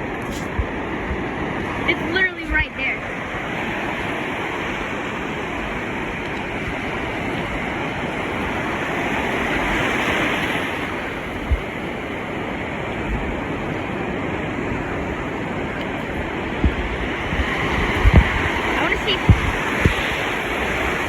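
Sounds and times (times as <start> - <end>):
ocean surf breaking: 0.0 - 21.0
low bump: 16.1 - 20.0.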